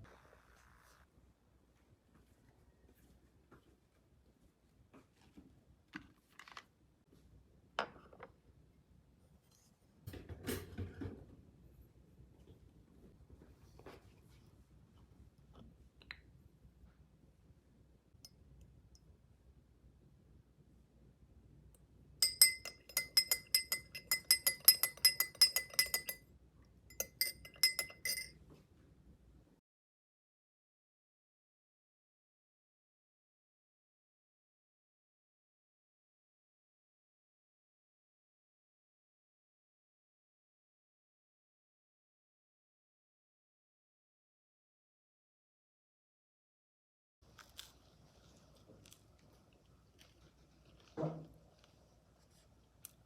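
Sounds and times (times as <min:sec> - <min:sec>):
metal utensil clinking in glass: 0:22.2 - 0:26.2, 0:26.9 - 0:28.4.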